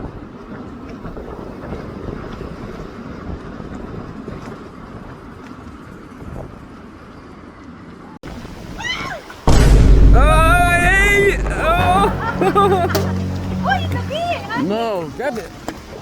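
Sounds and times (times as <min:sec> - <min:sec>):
wind buffeting microphone: 0:00.0 - 0:07.0.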